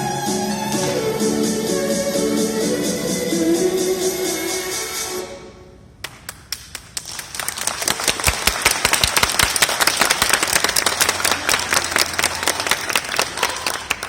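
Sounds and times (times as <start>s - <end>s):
audience applauding: 6.5s - 14.0s.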